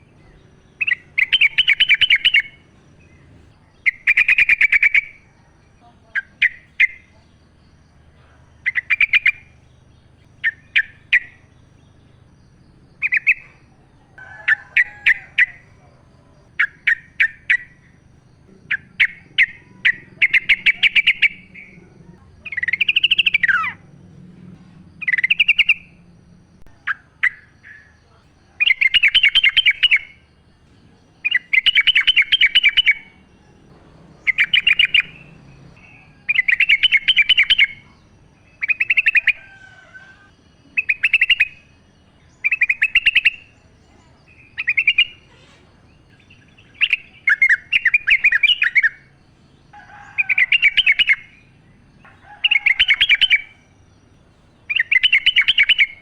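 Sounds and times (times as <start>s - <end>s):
bird chattering song: 0.0s - 56.0s
bird slurred arching note: 13.0s - 26.2s, 31.3s - 41.4s.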